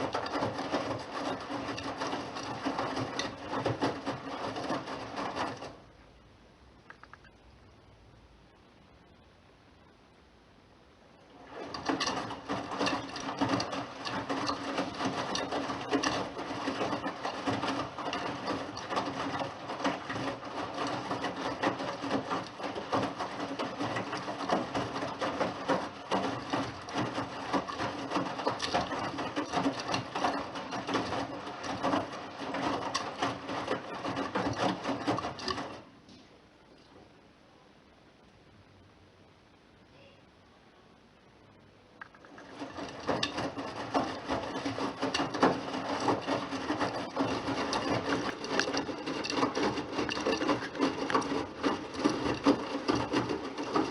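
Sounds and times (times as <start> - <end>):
wet laundry tumbling: 0.0 - 5.9, 11.2 - 36.1, 42.1 - 53.9
washing machine motor hum: 0.0 - 36.6, 41.5 - 53.9.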